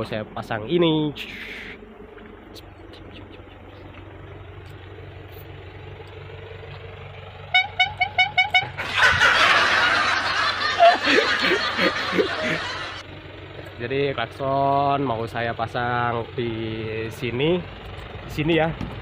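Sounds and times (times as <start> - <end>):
horn beeping: 7.5 - 8.8.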